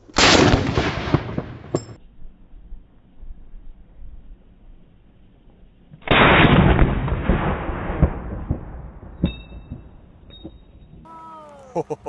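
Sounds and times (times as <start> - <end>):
rifle shot rumbling: 0.2 - 1.8.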